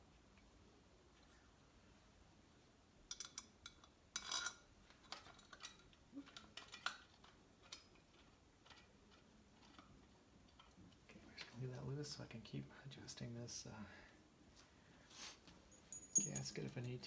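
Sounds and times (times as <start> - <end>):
metal parts clinking together: 4.2 - 7.0, 15.8 - 16.7.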